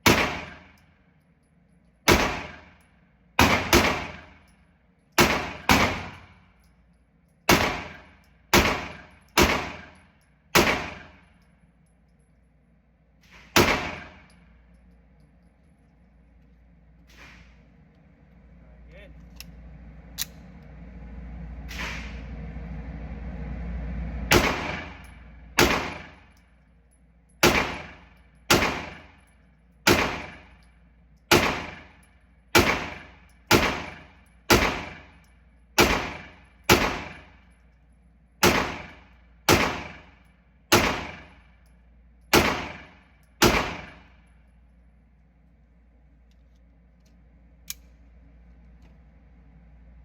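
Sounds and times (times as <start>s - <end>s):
pistol shots with echo: 0.0s - 0.8s, 2.1s - 2.7s, 3.4s - 4.4s, 5.2s - 6.3s, 7.5s - 11.3s, 13.4s - 14.3s, 24.3s - 25.0s, 25.6s - 26.3s, 27.4s - 29.2s, 29.9s - 30.6s, 31.3s - 35.2s, 35.8s - 37.4s, 38.4s - 41.4s, 42.3s - 44.1s
gun handling clicks: 19.2s - 19.6s, 20.2s - 20.6s, 46.2s - 49.0s.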